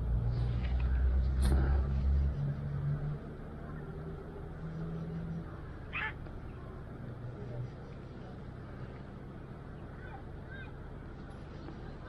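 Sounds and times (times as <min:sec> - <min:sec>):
city traffic hum: 0:00.0 - 0:12.0
animal call: 0:05.9 - 0:06.2.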